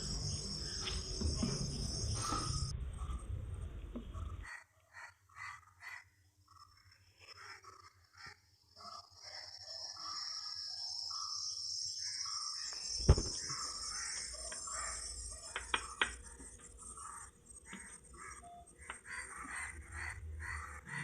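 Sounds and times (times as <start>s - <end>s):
high insect drone: 0.0s - 2.8s, 8.4s - 21.0s
sharp knocks: 13.1s - 13.6s.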